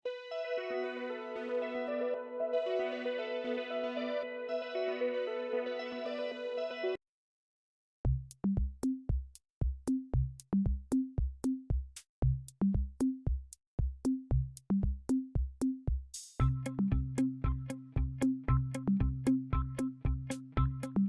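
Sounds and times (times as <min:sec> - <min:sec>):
drum machine beat: 0:08.1 - 0:21.0
bass line and synth notes: 0:16.4 - 0:21.0.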